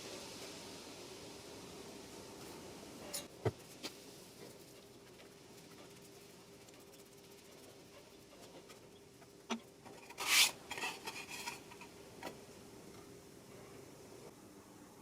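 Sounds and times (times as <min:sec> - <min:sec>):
hand scraping on wood: 0:09.9 - 0:11.8.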